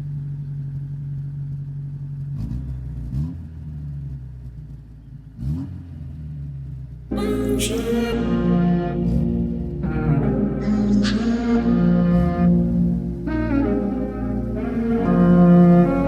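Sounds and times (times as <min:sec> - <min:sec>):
car engine idling and revving: 0:00.0 - 0:16.0
music: 0:07.1 - 0:16.0.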